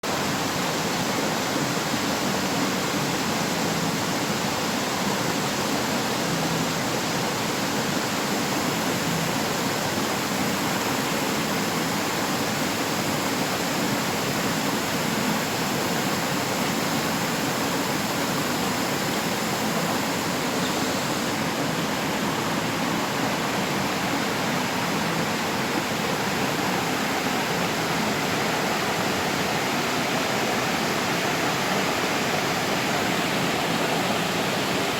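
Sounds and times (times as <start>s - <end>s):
river rushing over rocks: 0.0s - 34.9s.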